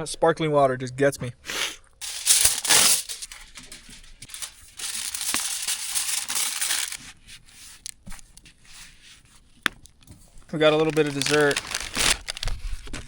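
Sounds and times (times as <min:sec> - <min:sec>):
packaging crinkling: 0:02.0 - 0:07.1, 0:10.6 - 0:13.0.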